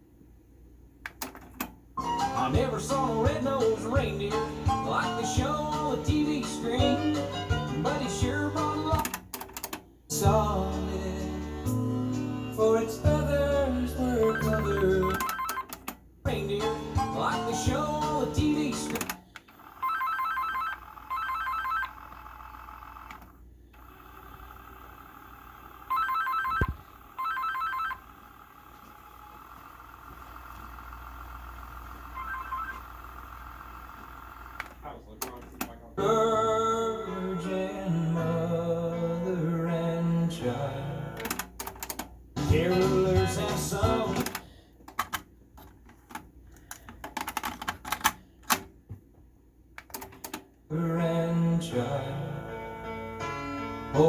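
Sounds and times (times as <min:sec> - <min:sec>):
music: 0:02.0 - 0:09.2, 0:10.1 - 0:15.4, 0:16.3 - 0:19.2, 0:36.0 - 0:41.5, 0:42.4 - 0:44.4, 0:51.2 - 0:54.0
electronic telephone ringer warbling: 0:14.2 - 0:15.7, 0:19.5 - 0:23.2, 0:23.8 - 0:34.8.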